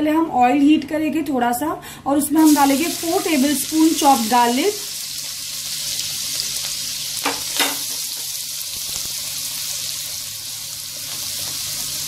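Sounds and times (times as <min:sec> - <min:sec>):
garlic sizzling in oil: 0:02.4 - 0:12.0.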